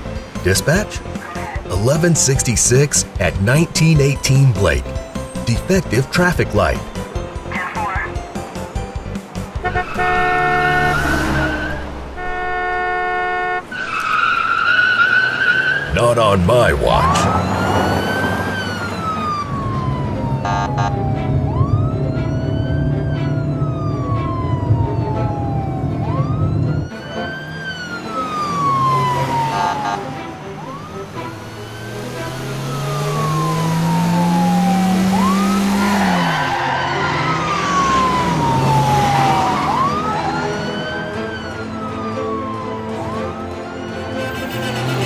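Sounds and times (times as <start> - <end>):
police siren wailing: 9.6 - 45.0
vehicle engine revving: 15.2 - 40.8, 44.1 - 45.0.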